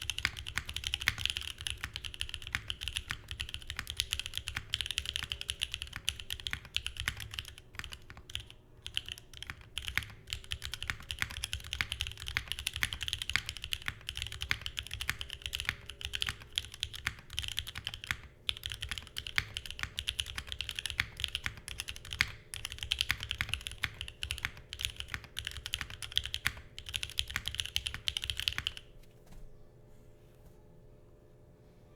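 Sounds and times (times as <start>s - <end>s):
mechanical keyboard typing: 0.0s - 28.9s.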